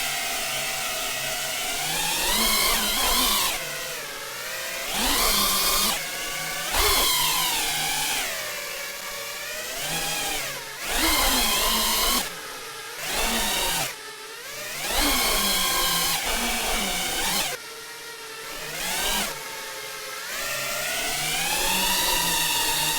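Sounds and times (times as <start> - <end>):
drone motors whining: 1.6 - 8.4, 9.8 - 17.6.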